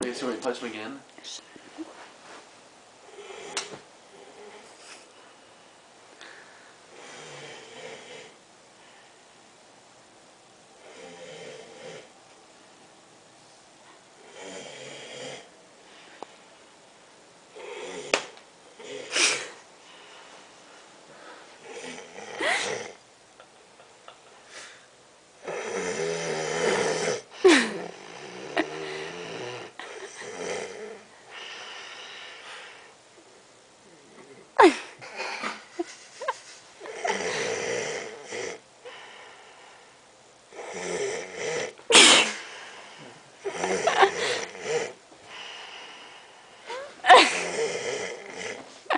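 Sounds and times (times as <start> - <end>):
man snoring: 3.1 - 4.6, 6.9 - 8.4, 10.8 - 12.1, 14.2 - 15.5, 17.6 - 19.6, 21.6 - 23.0, 25.4 - 32.9, 36.8 - 39.2, 40.5 - 42.6, 43.4 - 46.2, 47.1 - 48.7.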